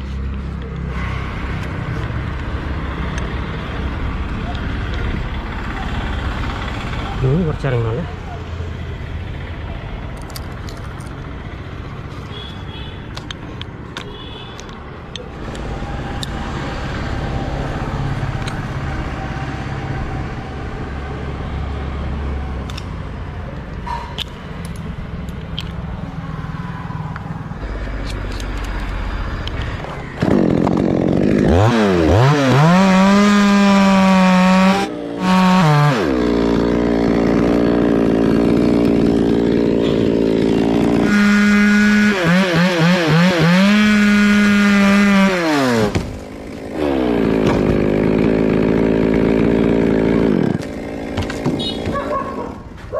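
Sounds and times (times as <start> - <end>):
chainsaw revving: 30.2 - 51.9.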